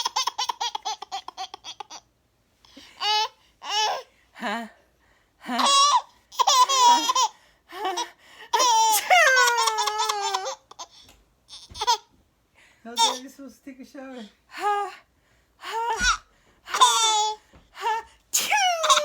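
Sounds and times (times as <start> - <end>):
child laughing and squealing: 8.7 - 10.6, 18.4 - 19.0.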